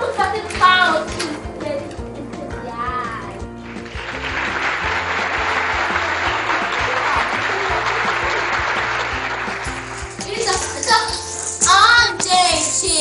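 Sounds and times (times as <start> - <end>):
background music: 0.0 - 13.0
many hands clapping: 3.6 - 12.9.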